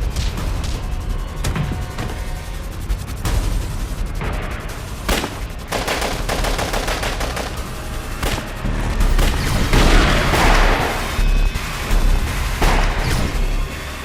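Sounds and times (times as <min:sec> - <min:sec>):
low rumble: 0:00.0 - 0:14.0
rapid gunfire bursts: 0:03.5 - 0:13.7.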